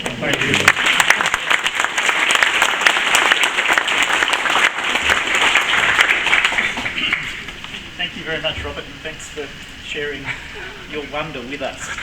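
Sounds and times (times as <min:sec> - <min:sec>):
audience applauding: 0:00.0 - 0:07.8.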